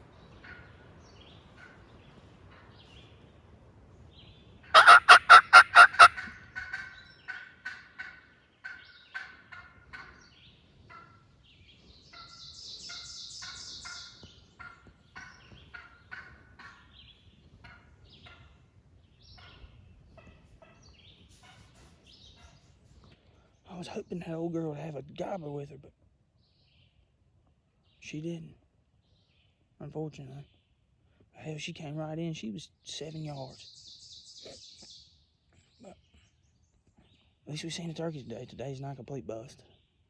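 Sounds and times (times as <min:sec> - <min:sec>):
turkey yelping and clucking: 0:04.8 - 0:08.1.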